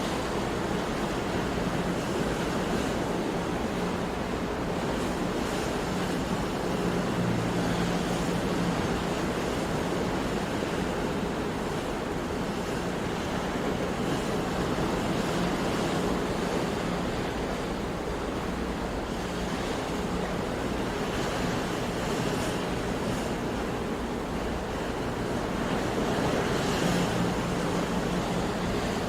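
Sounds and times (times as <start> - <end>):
sea waves washing in: 0.0 - 29.0.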